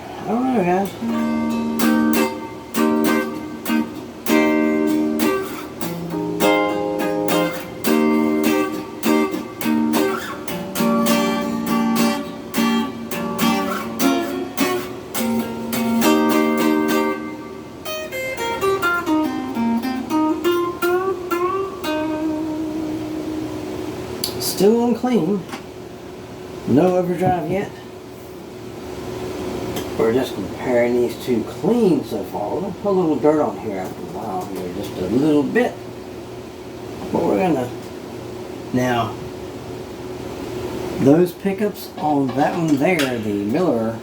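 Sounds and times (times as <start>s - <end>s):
clean electric guitar with reverb: 0.8s - 24.2s.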